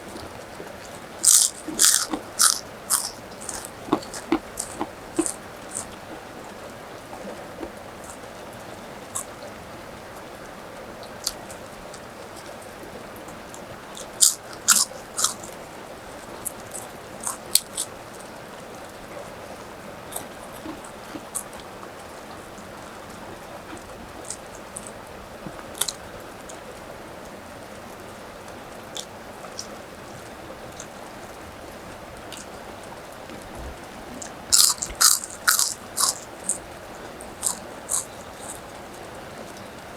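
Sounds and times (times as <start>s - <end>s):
crunchy chewing of food: 0.0s - 26.7s, 28.8s - 39.6s
steady rain hiss: 0.0s - 39.9s.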